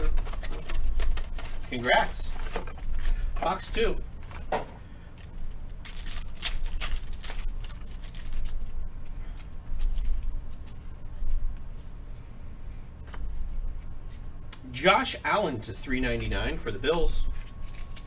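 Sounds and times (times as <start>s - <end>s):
packaging rustling and crinkling: 0.0s - 4.5s, 5.1s - 11.5s, 17.3s - 18.0s
cards being handled: 0.0s - 11.9s, 17.3s - 18.0s.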